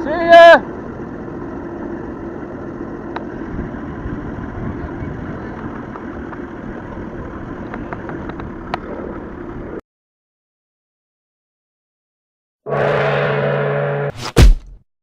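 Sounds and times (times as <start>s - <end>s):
motorboat engine running: 0.0s - 9.8s
wind noise: 3.4s - 9.8s.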